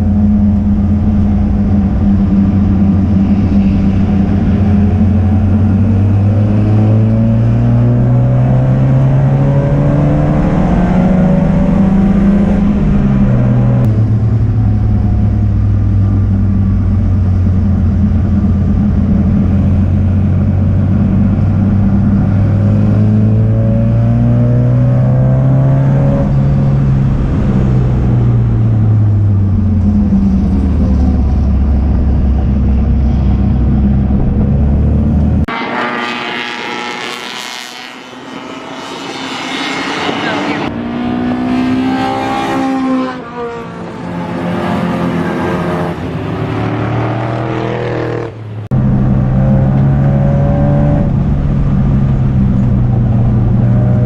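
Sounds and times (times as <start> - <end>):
race car engine accelerating: 0.0 - 54.0
wind and road noise: 0.0 - 54.0.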